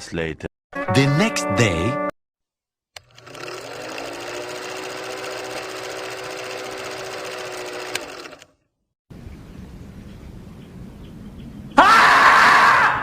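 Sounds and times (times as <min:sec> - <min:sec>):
mechanical whirring and rattling: 0:03.0 - 0:08.6.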